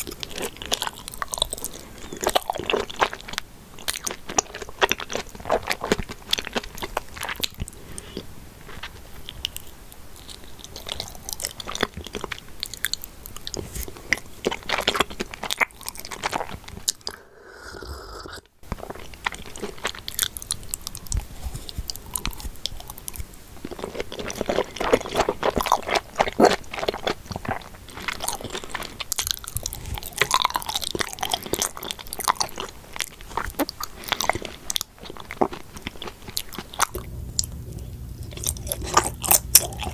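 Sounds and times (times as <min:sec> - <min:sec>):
person chewing sticky food: 0:00.0 - 0:39.9.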